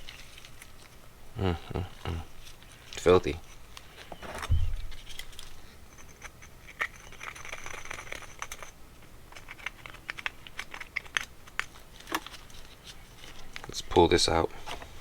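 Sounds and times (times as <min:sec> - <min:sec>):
hand tool scraping and clicking: 0:05.1 - 0:12.6.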